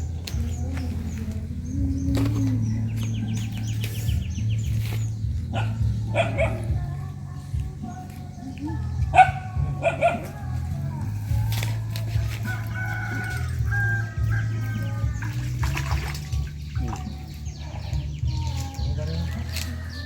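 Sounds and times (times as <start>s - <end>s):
background music: 0.0s - 20.0s
chickens crowing and clucking: 0.0s - 20.0s
steady low hum: 0.0s - 20.0s.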